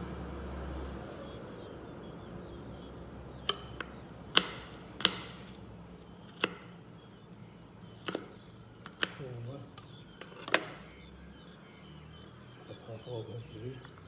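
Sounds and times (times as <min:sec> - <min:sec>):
knife chopping on cutting board: 0:03.5 - 0:05.6, 0:06.3 - 0:06.7, 0:08.0 - 0:09.2.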